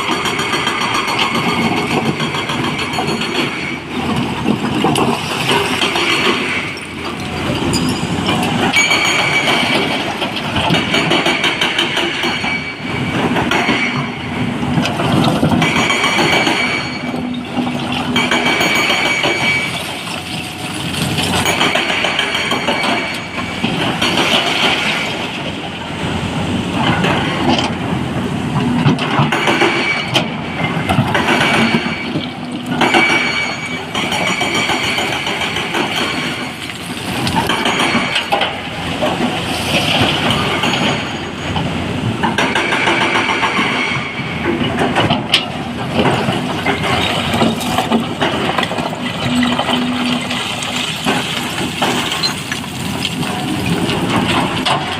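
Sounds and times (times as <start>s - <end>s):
diesel engine under load: 0.0s - 54.9s
rock clattering and rumbling: 45.8s - 54.9s.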